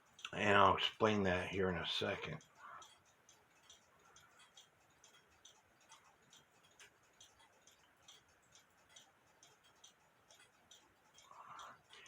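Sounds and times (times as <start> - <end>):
clock ticking: 0.0 - 12.0.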